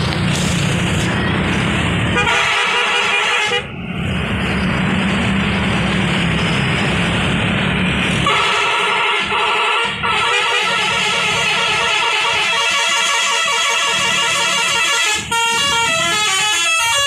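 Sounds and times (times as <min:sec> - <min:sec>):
bus musical horn trilling: 0:02.1 - 0:03.7, 0:08.2 - 0:17.0.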